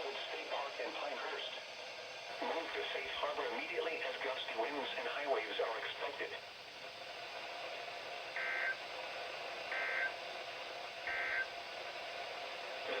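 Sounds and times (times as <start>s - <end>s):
radio hiss: 0.0s - 6.5s, 8.4s - 8.9s, 9.6s - 10.4s, 11.1s - 13.0s
digital data tone bursts: 8.4s - 8.8s, 9.8s - 10.1s, 11.1s - 11.4s.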